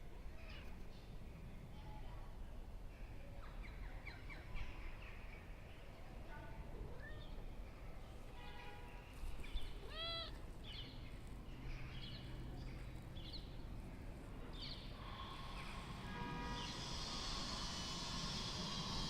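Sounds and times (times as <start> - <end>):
cat chirping: 9.7 - 10.4
cat meow: 9.8 - 10.4.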